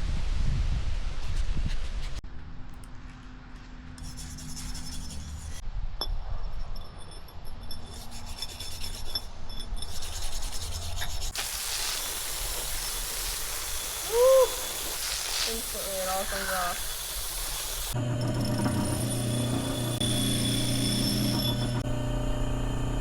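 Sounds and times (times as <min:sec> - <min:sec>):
scrubbing rust off metal: 0:03.9 - 0:05.6, 0:07.7 - 0:21.8
steady hiss: 0:11.3 - 0:18.0.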